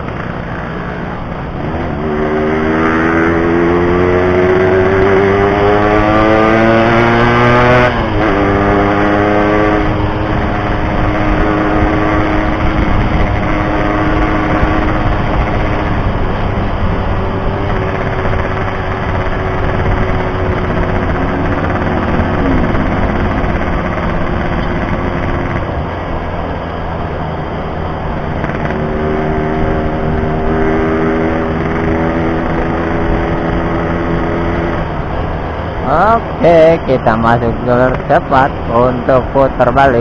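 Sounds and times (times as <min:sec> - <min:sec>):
motorcycle two-stroke engine: 0:00.0 - 0:26.4.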